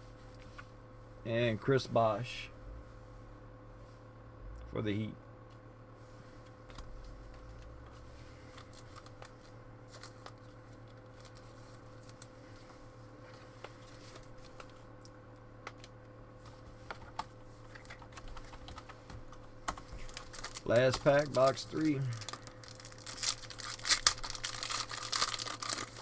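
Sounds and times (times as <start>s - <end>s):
low electrical hum: 0.0s - 26.0s
trading cards clicking and rustling: 16.9s - 26.0s.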